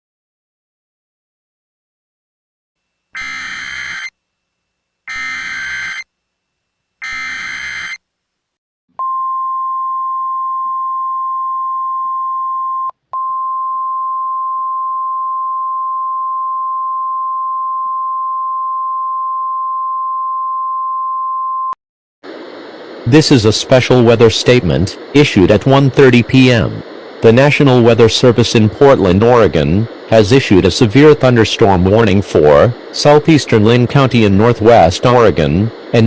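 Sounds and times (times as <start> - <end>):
steady high warning tone: 2.9 - 6.2, 7.0 - 8.0
buzzing digital data bursts: 3.2 - 4.1, 5.1 - 6.1, 7.0 - 8.0.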